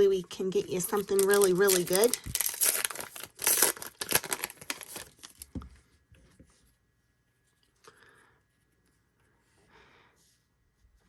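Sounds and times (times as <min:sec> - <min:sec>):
plastic wrapper crinkling: 0:00.6 - 0:05.5
cards rustling: 0:00.8 - 0:05.4.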